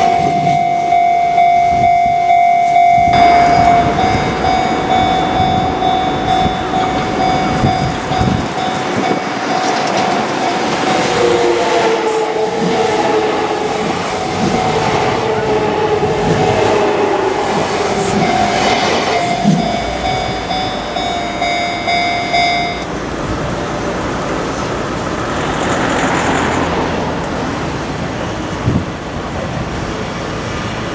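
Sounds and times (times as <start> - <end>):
crossing warning bell ringing: 0.0 - 23.0
train running over crossing: 0.0 - 30.9.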